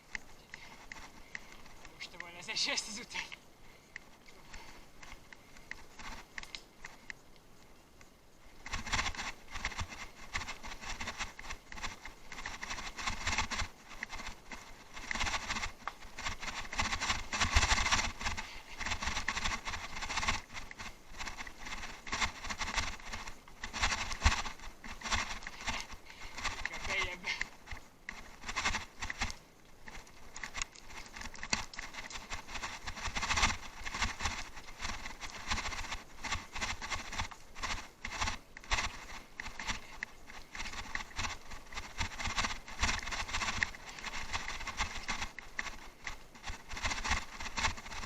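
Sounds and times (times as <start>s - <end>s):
bicycle tyres crunching: 0.0s - 48.0s
bike rattling over bumps: 8.5s - 48.0s.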